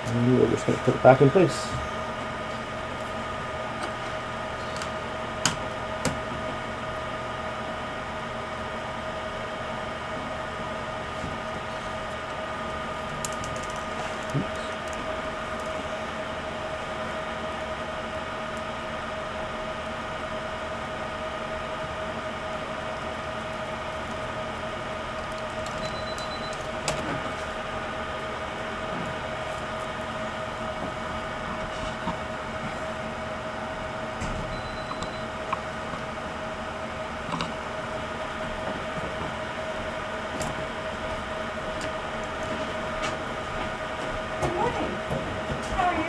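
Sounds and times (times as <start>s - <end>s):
steady hum and hiss: 0.0s - 46.0s.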